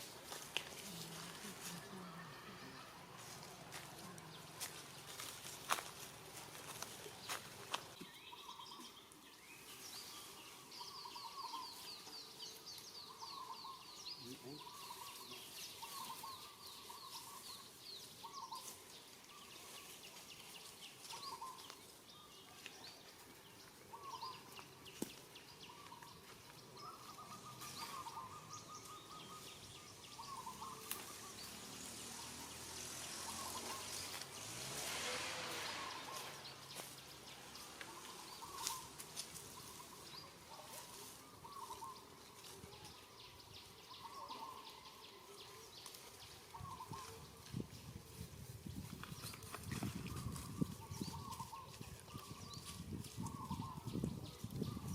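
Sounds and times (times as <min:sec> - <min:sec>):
outdoor background noise: 0:00.0 - 0:54.9
rushing rustling swell: 0:31.9 - 0:39.0.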